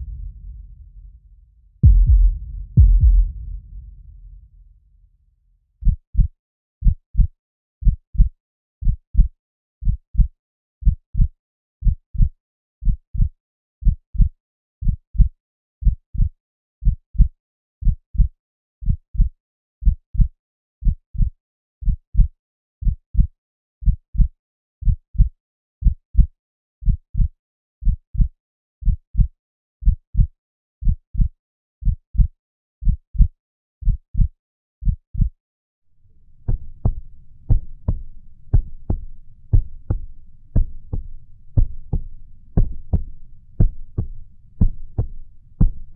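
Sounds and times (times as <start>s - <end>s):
heartbeat thumps: 0.0s - 1.1s, 1.8s - 4.5s, 36.2s - 45.9s.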